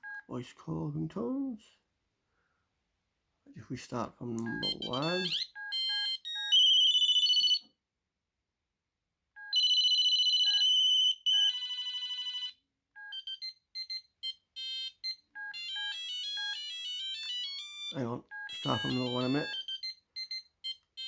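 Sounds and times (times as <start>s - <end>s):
short beeps: 4.4s - 5.4s
mobile phone ringtones: 4.4s - 7.7s, 9.4s - 21.0s.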